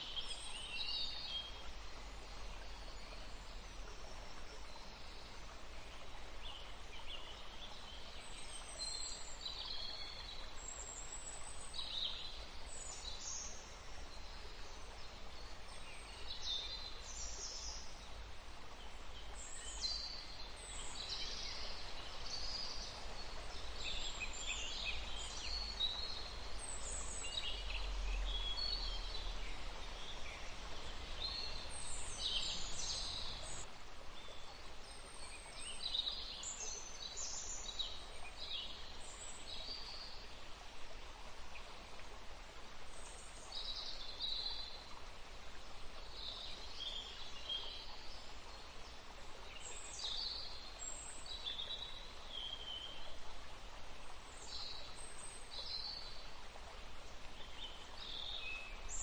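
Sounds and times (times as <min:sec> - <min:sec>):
outdoor ambience hiss: 0:00.0 - 0:59.0.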